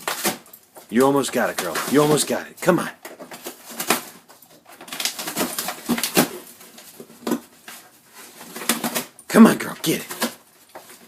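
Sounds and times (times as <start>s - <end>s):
dog tearing cardboard: 0.0s - 0.5s, 3.0s - 9.2s.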